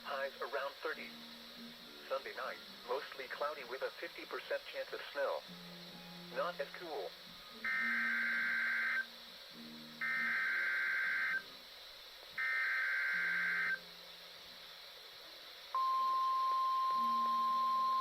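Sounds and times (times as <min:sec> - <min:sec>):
buzzy digital header bursts: 0:06.4 - 0:09.1, 0:10.0 - 0:11.5, 0:12.4 - 0:13.9
steady warning alarm tone: 0:07.6 - 0:09.1, 0:10.0 - 0:11.4, 0:12.4 - 0:13.8.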